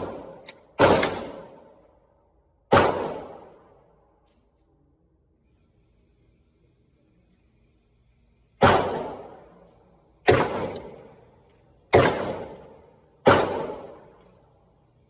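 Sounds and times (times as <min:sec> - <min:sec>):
gunshots with echo: 0:00.0 - 0:01.6, 0:02.7 - 0:03.6, 0:08.6 - 0:09.5, 0:10.3 - 0:11.2, 0:11.9 - 0:14.1.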